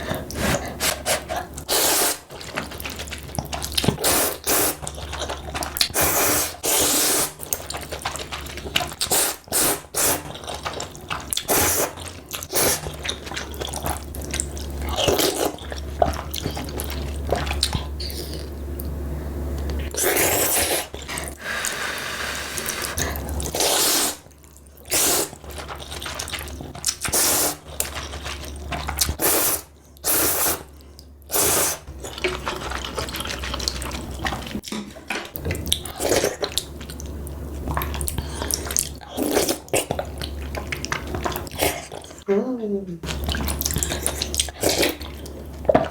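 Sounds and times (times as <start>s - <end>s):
noodles being slurped: 0.0s - 18.5s, 19.8s - 34.7s, 43.1s - 45.9s
wet chewing smacks: 0.0s - 18.9s, 22.9s - 29.3s, 29.9s - 42.3s, 43.0s - 45.9s.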